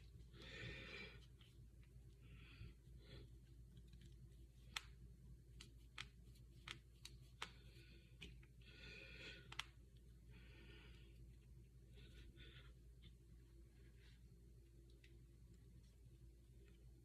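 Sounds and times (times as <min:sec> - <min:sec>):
soft breath: 0:00.0 - 0:03.8, 0:07.2 - 0:14.8
knuckles cracking: 0:03.9 - 0:08.5, 0:09.4 - 0:09.8.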